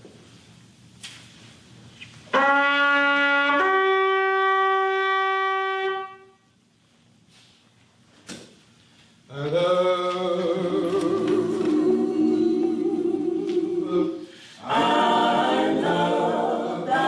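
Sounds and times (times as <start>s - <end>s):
pitch pipe notes: 2.3s - 6.3s.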